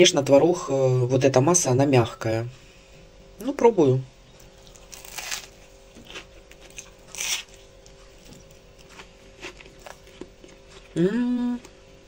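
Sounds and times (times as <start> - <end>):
crunching bites of toasted bread: 4.4 - 10.9.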